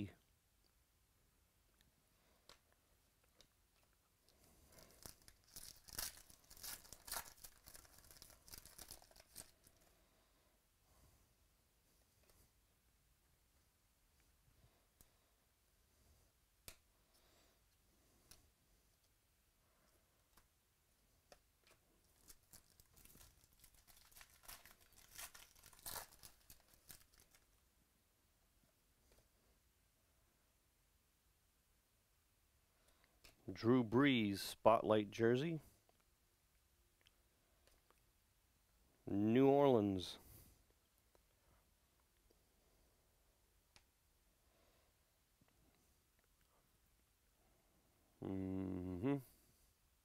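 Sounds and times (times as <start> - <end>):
foil wrapper tearing and crinkling: 4.8 - 9.9, 22.2 - 27.5.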